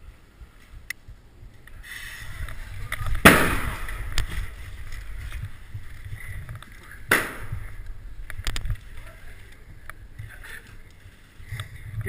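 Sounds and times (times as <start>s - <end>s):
low microphone rumble: 0.0s - 12.0s
quick sharp cracks: 2.9s - 4.0s, 7.1s - 7.6s
loud sharp bang with echo: 3.2s - 3.9s, 7.1s - 7.6s.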